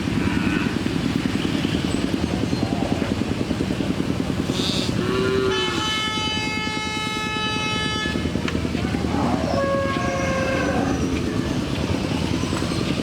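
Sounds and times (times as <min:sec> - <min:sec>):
engine rumble: 0:00.0 - 0:13.0
vehicle horn: 0:05.3 - 0:08.4, 0:09.5 - 0:11.0.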